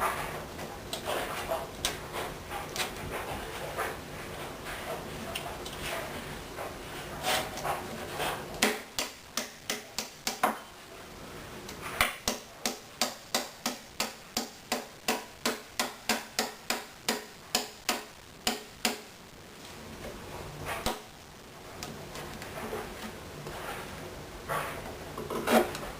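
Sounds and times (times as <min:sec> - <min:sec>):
small hammer tapping: 0:08.6 - 0:10.6, 0:12.0 - 0:19.1.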